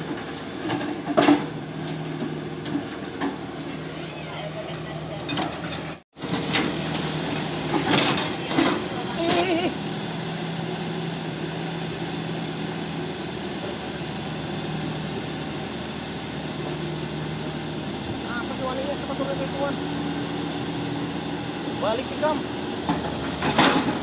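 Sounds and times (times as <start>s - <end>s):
excavator diesel engine running: 0.0s - 24.0s
voices: 3.7s - 6.0s, 7.3s - 9.8s, 18.1s - 19.9s, 21.7s - 22.5s.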